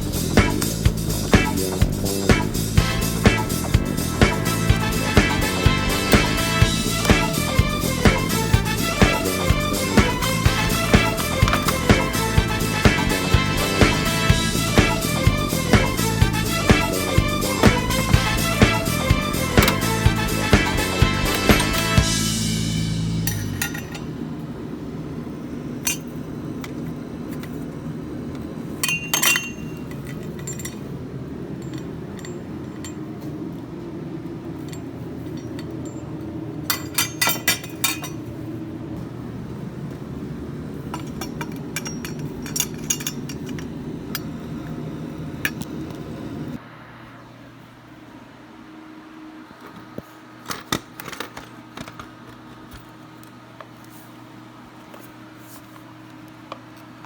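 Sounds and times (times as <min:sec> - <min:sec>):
hand tools and metal parts clinking: 0:00.0 - 0:22.0, 0:23.2 - 0:24.2, 0:25.8 - 0:27.6, 0:28.7 - 0:33.7, 0:34.5 - 0:38.3, 0:40.9 - 0:44.4
steady low hum: 0:00.0 - 0:50.4.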